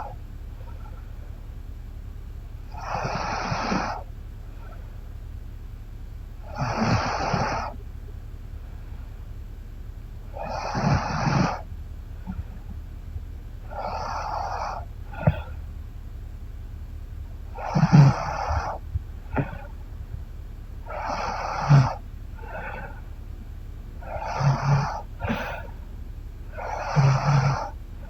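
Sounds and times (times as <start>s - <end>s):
woman snoring: 2.7s - 4.0s, 6.5s - 7.8s, 10.4s - 11.6s, 13.7s - 15.5s, 17.6s - 19.7s, 20.9s - 23.0s, 24.0s - 25.7s, 26.5s - 27.8s.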